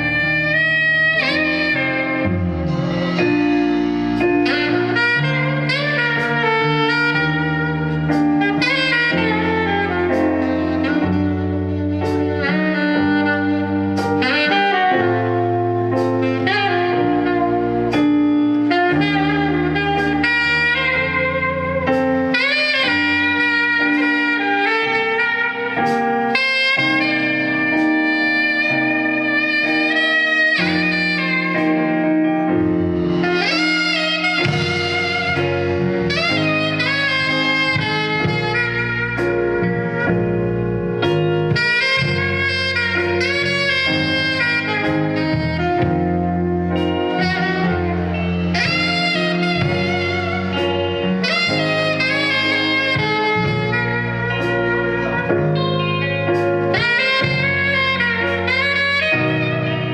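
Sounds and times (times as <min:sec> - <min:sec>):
bass notes: 0:00.0 - 0:59.9
lead melody: 0:00.0 - 0:59.9
steady drum beat: 0:32.6 - 0:40.0, 0:41.0 - 0:59.6.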